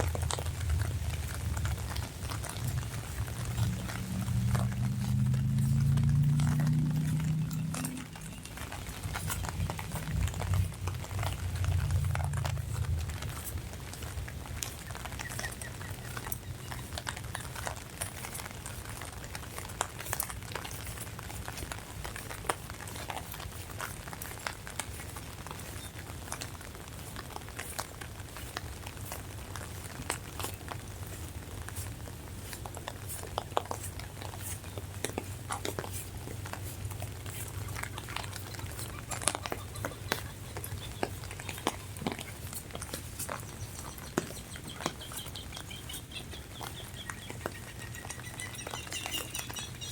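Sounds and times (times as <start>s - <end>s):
low steady hum: 0.0s - 49.9s
rain falling: 0.0s - 49.9s
raindrops tapping on umbrella: 0.0s - 49.9s.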